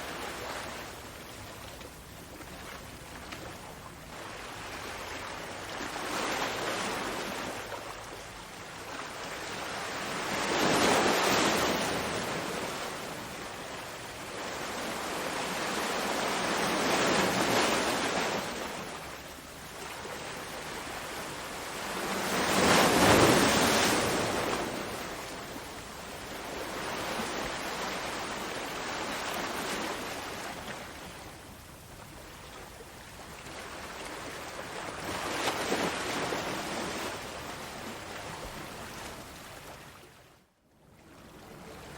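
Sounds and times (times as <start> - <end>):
ocean waves breaking: 21.7 - 25.7.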